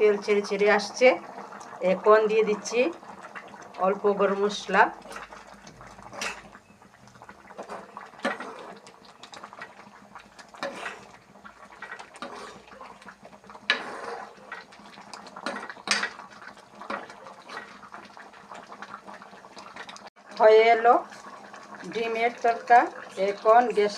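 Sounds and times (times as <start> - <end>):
curry simmering: 0.0 - 23.9
spoon scraping a pot: 6.1 - 6.6, 7.6 - 8.8, 10.6 - 11.2, 11.8 - 12.9, 13.6 - 14.7, 15.4 - 16.2.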